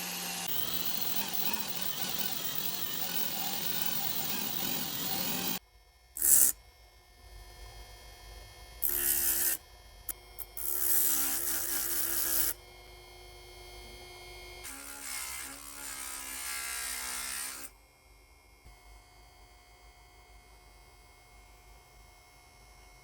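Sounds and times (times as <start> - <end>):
power tool grinding metal: 0.0 - 5.6, 14.7 - 17.7.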